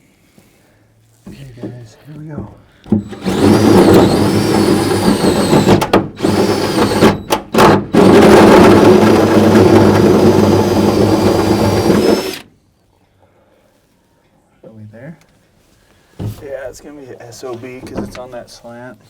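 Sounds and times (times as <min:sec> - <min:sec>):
electric drill cutting metal: 0:03.0 - 0:12.4.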